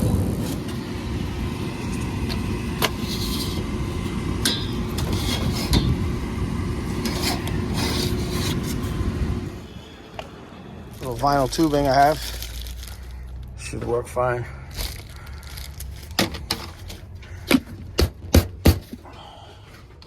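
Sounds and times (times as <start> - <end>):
machinery humming: 0.0 - 12.2.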